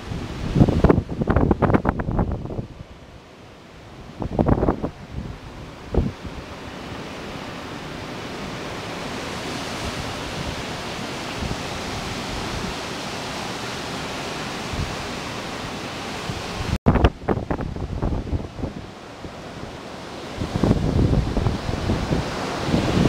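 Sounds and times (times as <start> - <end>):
gusts buffeting microphone: 0.0 - 23.0
wind and rain roaring: 0.0 - 23.0.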